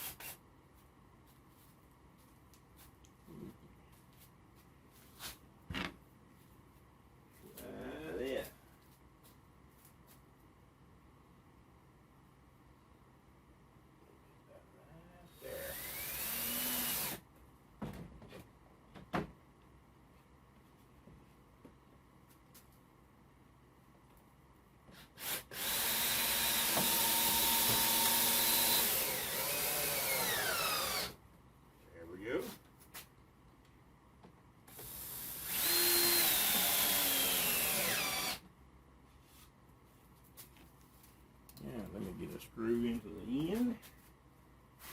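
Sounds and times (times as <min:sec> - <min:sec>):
power drill whirring: 0:15.5 - 0:17.2, 0:25.1 - 0:31.2, 0:34.7 - 0:38.4.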